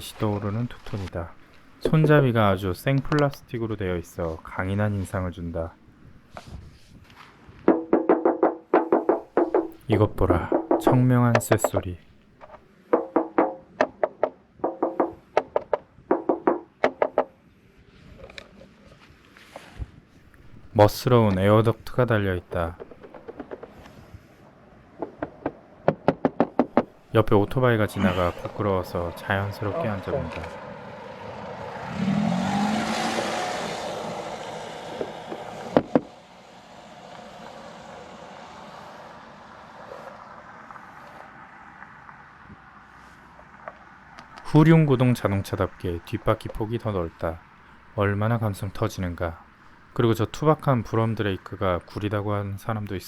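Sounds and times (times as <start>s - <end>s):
low street background: 0.0s - 18.0s, 20.1s - 53.0s
knuckles knocking on steel frame: 7.7s - 11.9s, 13.0s - 17.3s
motorcycle passing by: 27.9s - 44.2s.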